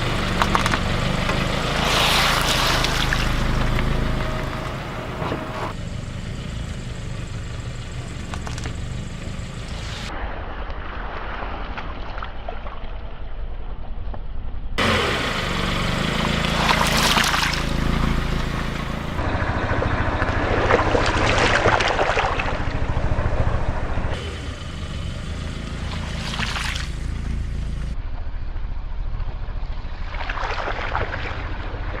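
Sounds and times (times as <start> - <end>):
tire crushing floral foam: 0.0 - 5.8
low car rumble: 0.0 - 10.2, 14.8 - 32.0.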